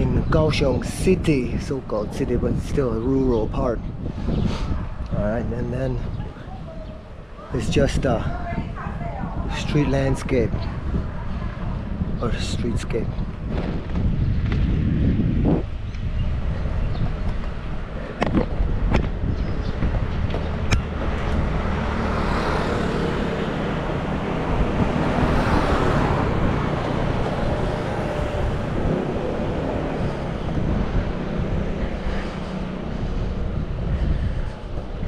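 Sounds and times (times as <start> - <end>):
wind rumble on microphone: 0.0 - 35.0
vehicle passing close: 19.8 - 35.0.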